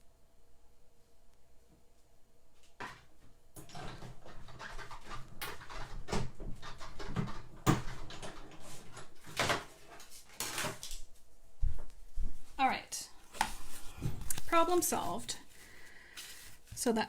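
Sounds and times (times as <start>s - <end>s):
paper rustling: 13.2s - 17.0s.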